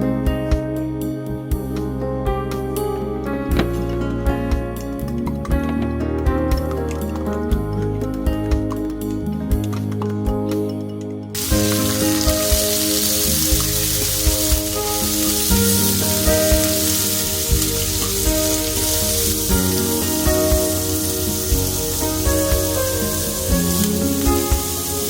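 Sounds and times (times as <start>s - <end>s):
background music: 0.0s - 25.0s
food sizzling in a pan: 11.4s - 25.0s.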